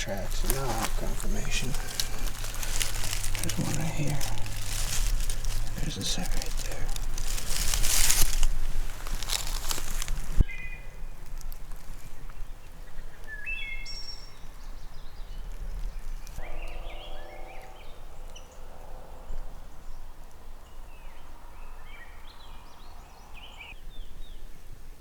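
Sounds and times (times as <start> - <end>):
steady low rumble: 0.0 - 10.5
birds chirping: 0.0 - 24.1
harsh low bird call: 16.4 - 19.8.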